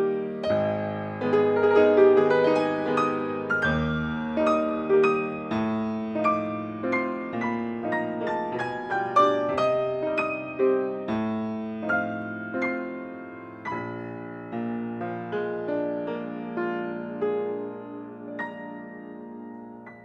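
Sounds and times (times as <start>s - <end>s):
gentle solo piano piece: 0.0s - 20.0s.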